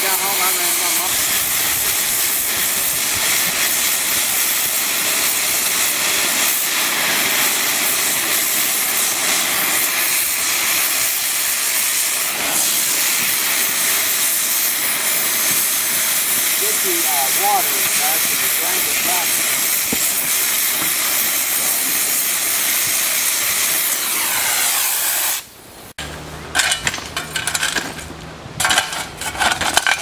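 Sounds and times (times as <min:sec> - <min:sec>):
steady loud hiss: 0:00.0 - 0:30.0.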